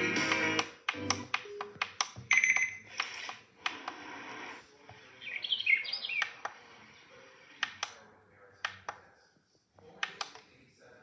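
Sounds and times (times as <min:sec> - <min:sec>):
bird chirps from alarm speaker: 0:05.2 - 0:06.3.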